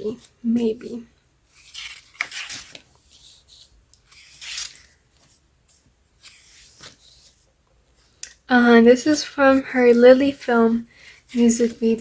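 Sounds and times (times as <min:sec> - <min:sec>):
book pages turning: 0:01.5 - 0:08.4.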